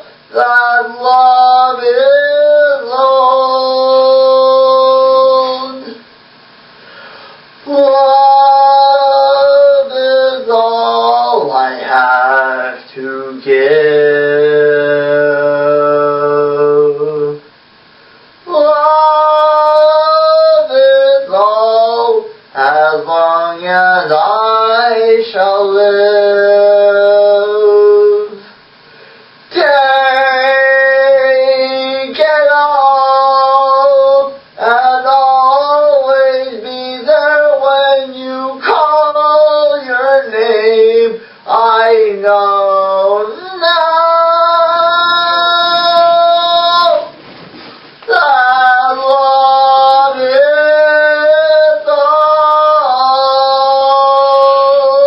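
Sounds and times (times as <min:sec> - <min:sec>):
person singing long held notes: 0:00.0 - 0:06.0, 0:07.6 - 0:17.5, 0:48.0 - 0:55.0.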